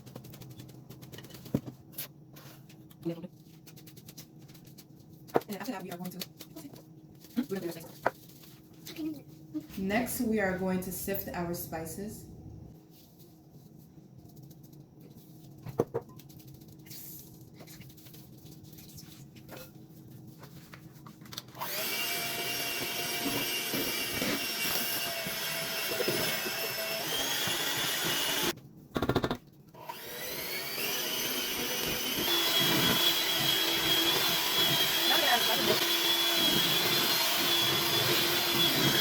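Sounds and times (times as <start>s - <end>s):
electric mixer whining: 21.6s - 28.6s, 29.8s - 39.0s.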